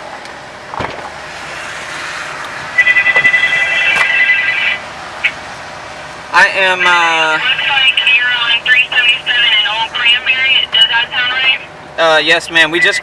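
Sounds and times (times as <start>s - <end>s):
electronic beeping tone: 2.8s - 4.8s.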